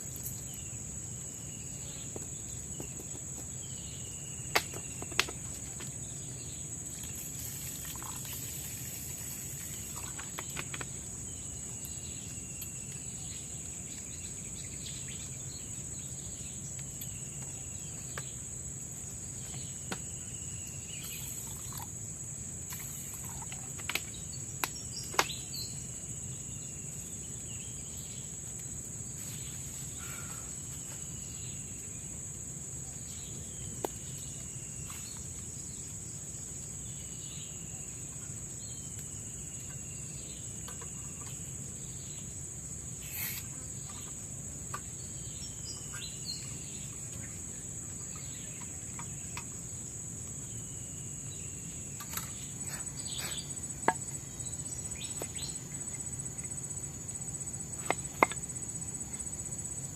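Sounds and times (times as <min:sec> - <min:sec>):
insects droning: 0:00.0 - 0:59.9.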